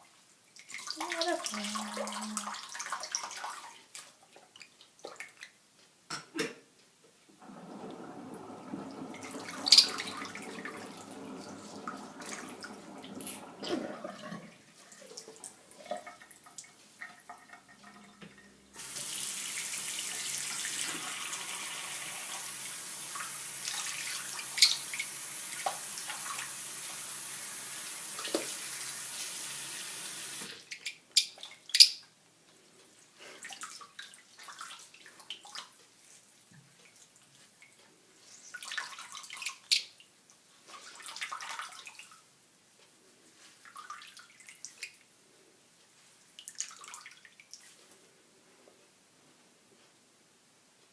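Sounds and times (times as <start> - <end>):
tap water running into sink: 7.4 - 30.6.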